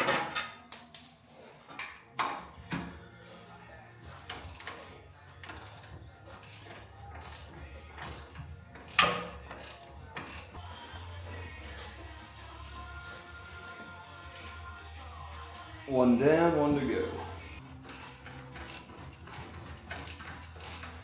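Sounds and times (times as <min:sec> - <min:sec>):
ratchet wrench clicking: 0:04.3 - 0:10.6, 0:17.8 - 0:21.0.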